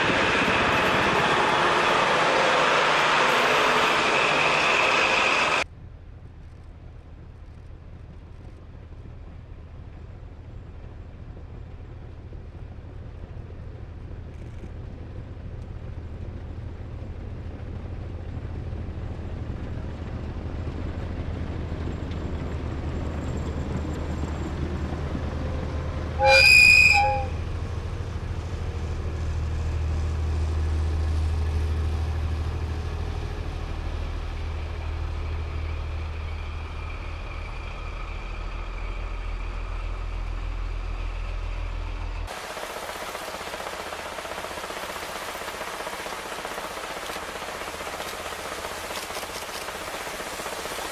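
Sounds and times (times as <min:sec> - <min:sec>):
train rumbling: 0:00.0 - 0:50.9
train horn blast: 0:26.2 - 0:27.6.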